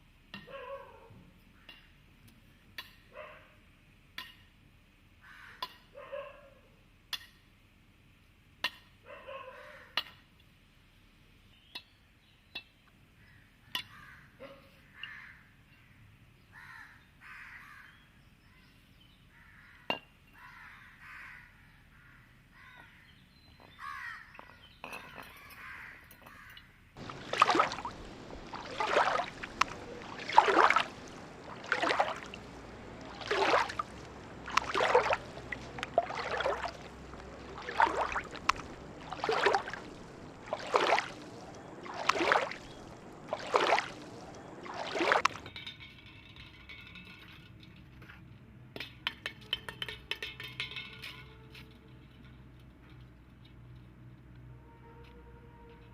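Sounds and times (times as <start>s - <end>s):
crows cawing: 5.2s - 5.7s, 20.4s - 22.9s, 23.8s - 24.3s.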